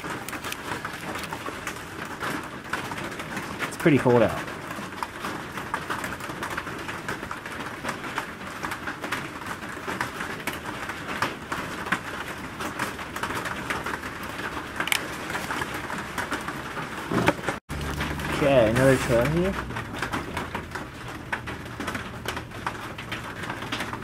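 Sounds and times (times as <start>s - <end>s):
raindrops ticking on surfaces: 0.0s - 24.0s
rain hissing: 12.2s - 24.0s.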